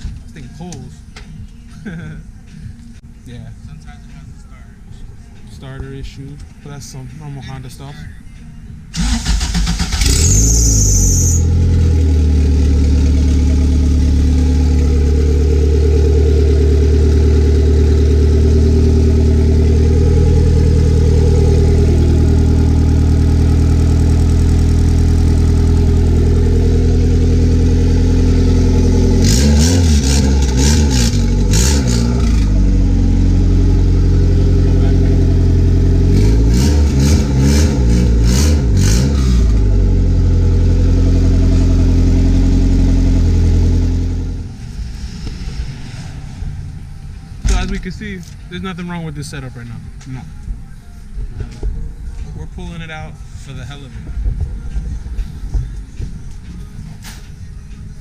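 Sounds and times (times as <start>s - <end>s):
engine revving: 9.0s - 48.1s
car engine idling: 9.0s - 56.4s.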